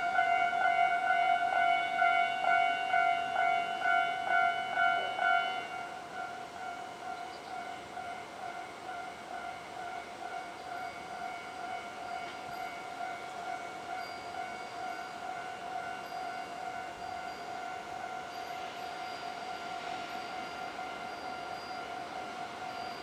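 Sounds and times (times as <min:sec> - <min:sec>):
level-crossing alarm bell ringing: 0:00.0 - 0:23.0
passing train rushing: 0:11.0 - 0:23.0.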